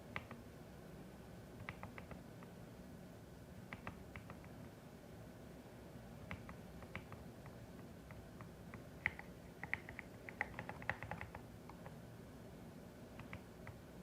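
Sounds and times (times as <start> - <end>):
mechanical keyboard typing: 1.6 - 2.2, 6.3 - 7.2, 9.0 - 12.0.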